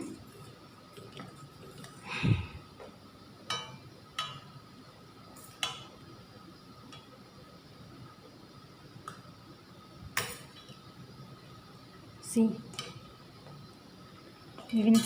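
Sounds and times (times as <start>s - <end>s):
metal spoon clinking on pan: 3.5s - 4.5s.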